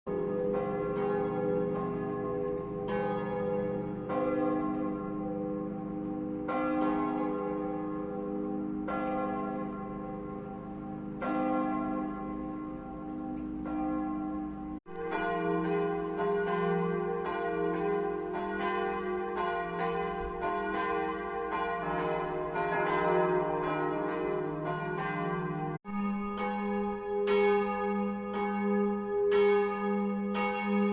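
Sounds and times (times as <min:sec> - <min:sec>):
church bells ringing: 0:00.1 - 0:30.9.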